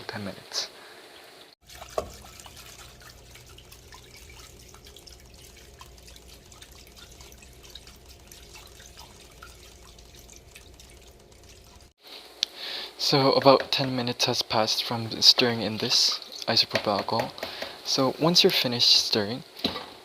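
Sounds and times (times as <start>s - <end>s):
low steady hum: 0.0s - 18.2s
liquid swishing and dripping: 1.6s - 12.0s.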